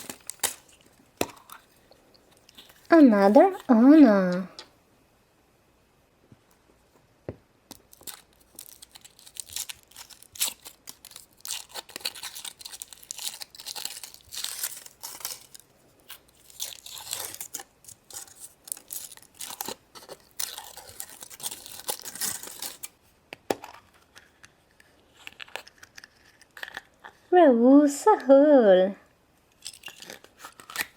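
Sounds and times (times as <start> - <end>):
wrappers crinkling and tearing: 0.0 - 1.8, 7.7 - 23.0, 29.6 - 30.9.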